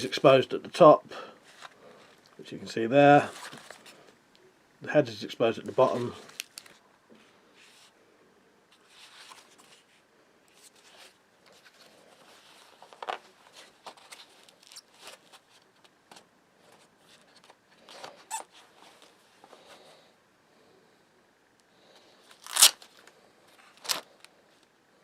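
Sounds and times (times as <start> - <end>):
handling rustles: 3.1 - 4.2, 8.7 - 19.9.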